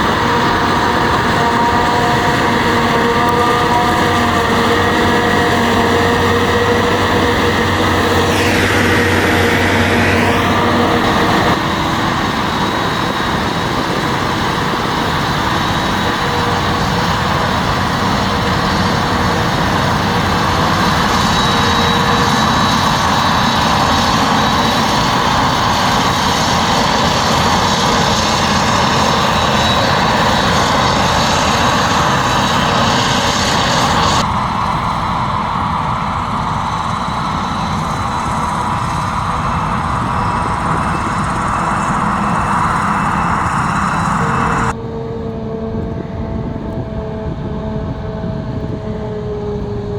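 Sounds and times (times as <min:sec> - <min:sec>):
diesel farm machinery running: 0:00.0 - 0:49.9.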